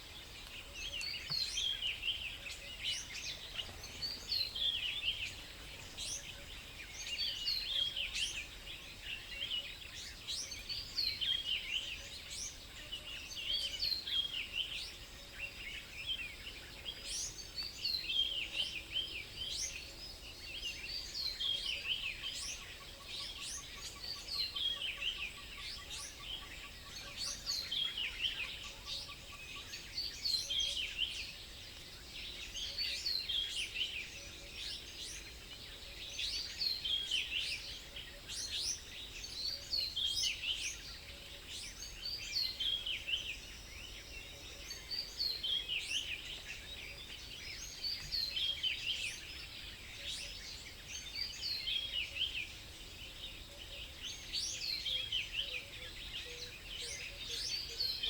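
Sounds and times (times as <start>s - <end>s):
songbirds chirping: 0.0s - 58.0s.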